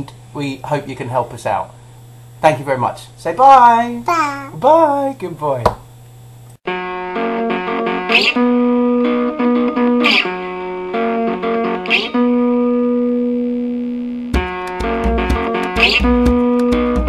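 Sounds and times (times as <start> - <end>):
guitar chords and strums: 6.7 - 17.0.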